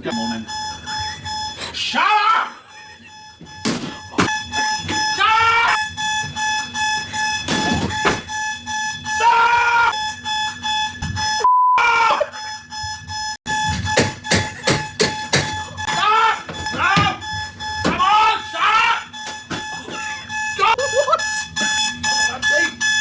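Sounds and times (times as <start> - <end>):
alarm clock beeping: 0.0 - 23.0
person crying out: 1.8 - 2.6, 9.2 - 9.9, 11.8 - 12.3, 15.9 - 17.1.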